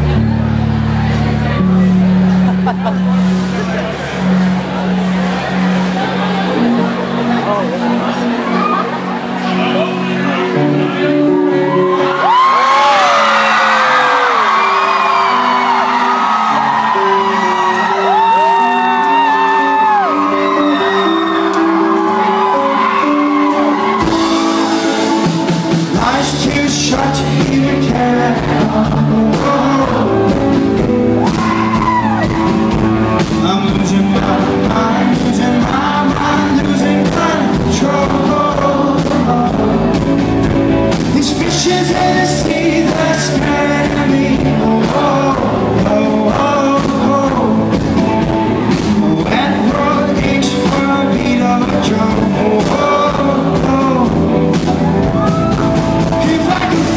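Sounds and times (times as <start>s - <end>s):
bass guitar: 0.0s - 56.9s
rock band playing live: 0.0s - 56.9s
man singing: 25.2s - 30.9s, 33.2s - 54.8s, 56.0s - 56.9s.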